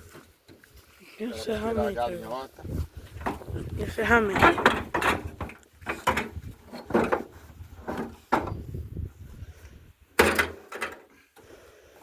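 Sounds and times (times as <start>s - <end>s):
wooden logs knocking together: 4.2s - 8.7s, 10.2s - 11.1s.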